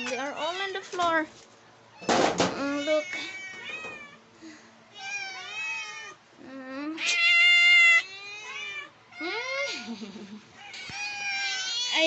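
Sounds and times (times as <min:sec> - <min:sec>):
cat meowing: 0:05.0 - 0:06.2, 0:07.0 - 0:09.9, 0:10.6 - 0:12.0.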